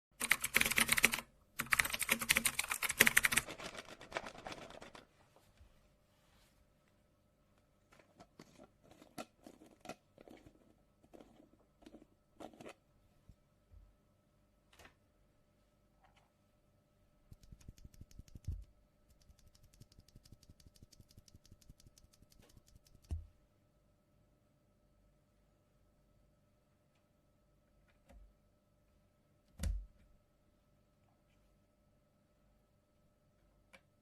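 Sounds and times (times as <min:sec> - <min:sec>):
mechanical keyboard keystrokes: 0:00.2 - 0:05.0, 0:17.3 - 0:23.2.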